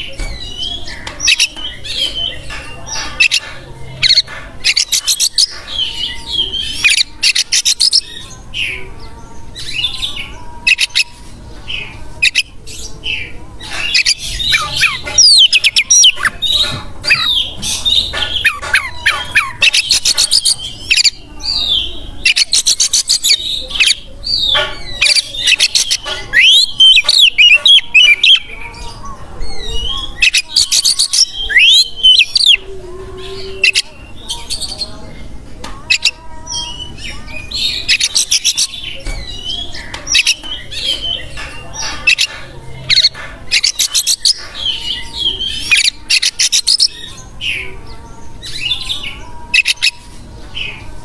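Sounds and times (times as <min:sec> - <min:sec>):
songbird singing whistled phrases: 0:29.6 - 0:32.7.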